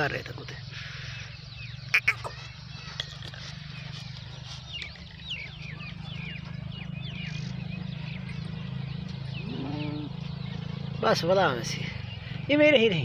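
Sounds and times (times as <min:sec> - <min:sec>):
small birds chirping: 0:00.0 - 0:13.0
low drawn-out call: 0:01.9 - 0:02.5.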